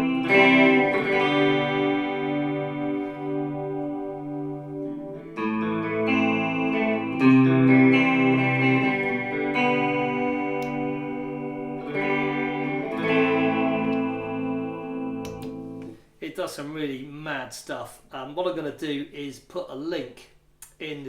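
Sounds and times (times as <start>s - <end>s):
electric guitar chords: 0.0s - 16.0s.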